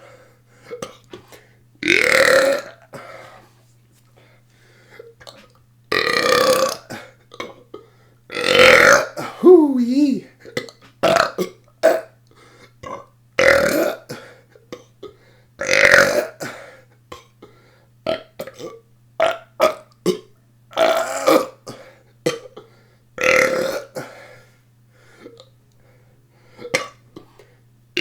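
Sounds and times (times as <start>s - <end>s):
person burping: 1.8s - 2.8s, 8.3s - 10.3s.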